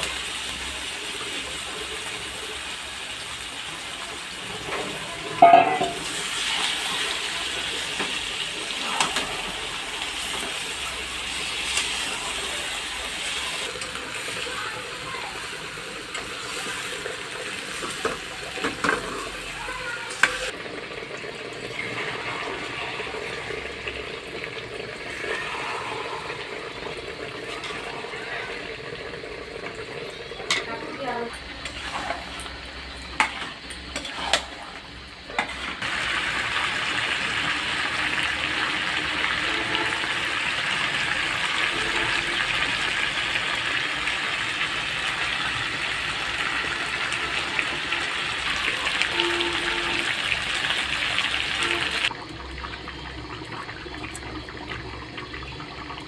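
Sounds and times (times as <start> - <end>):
hiss of food in a pan: 0.0 - 20.6, 25.0 - 28.8
utensil knocking metal pot: 5.4 - 6.1.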